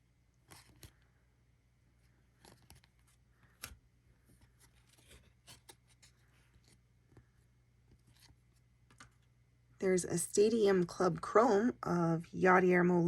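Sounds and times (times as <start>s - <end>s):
trading cards being flipped: 0.4s - 1.0s, 2.3s - 7.2s, 7.9s - 9.3s.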